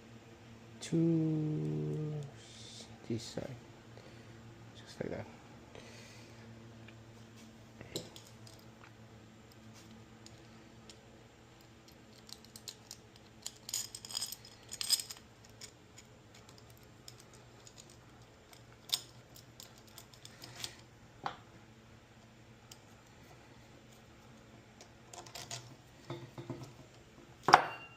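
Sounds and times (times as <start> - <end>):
metal parts and tools clinking: 12.1 - 20.7.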